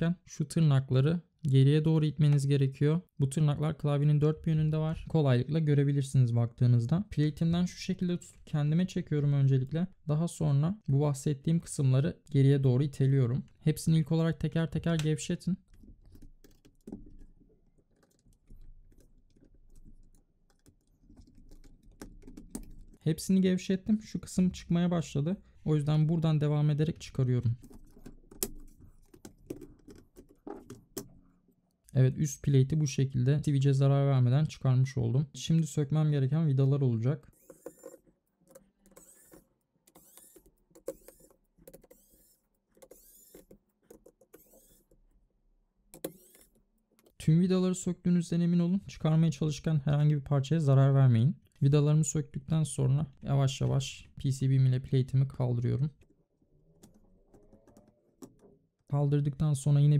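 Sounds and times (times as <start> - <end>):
screwdriver squeaking and clicking: 15.6 - 23.0, 37.3 - 45.1, 46.0 - 47.2.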